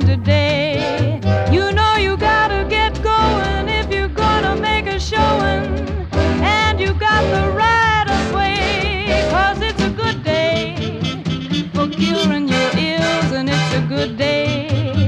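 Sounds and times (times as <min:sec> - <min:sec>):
swing music: 0:00.0 - 0:15.0.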